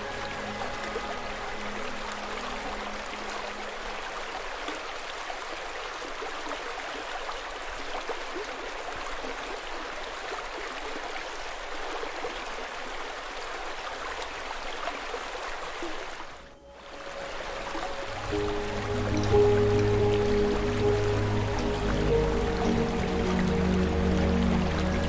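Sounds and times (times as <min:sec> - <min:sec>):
river water rushing over rocks: 0:00.0 - 0:06.4, 0:14.0 - 0:25.0.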